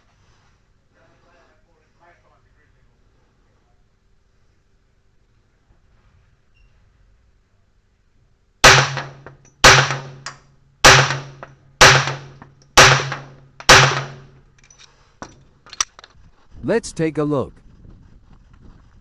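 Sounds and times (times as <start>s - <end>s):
pistol shots with echo: 8.6s - 14.4s.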